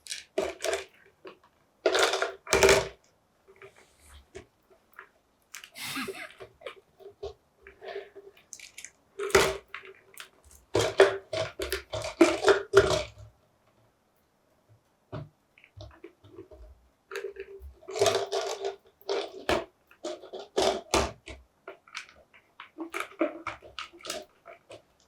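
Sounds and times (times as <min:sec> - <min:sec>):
parrot beak gnawing plastic bottle: 0:15.8 - 0:24.8.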